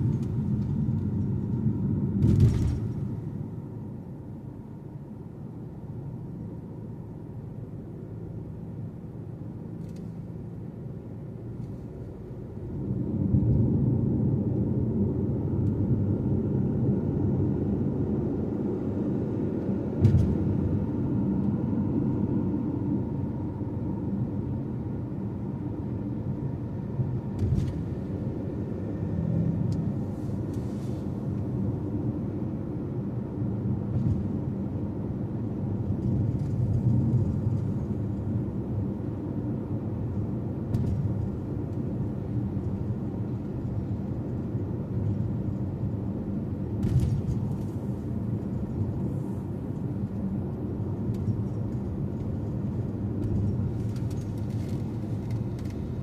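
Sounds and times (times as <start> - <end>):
car engine and road drone: 0.0 - 56.0.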